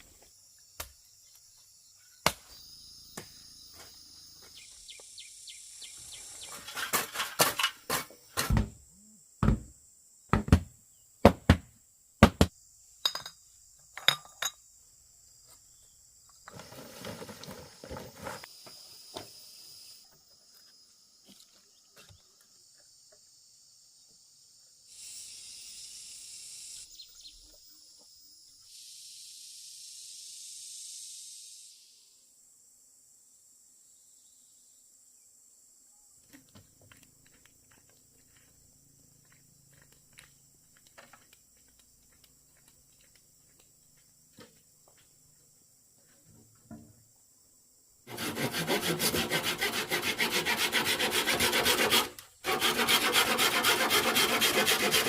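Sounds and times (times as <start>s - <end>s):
insects buzzing: 0.0s - 55.0s
sharp loud knocks: 10.3s - 12.5s.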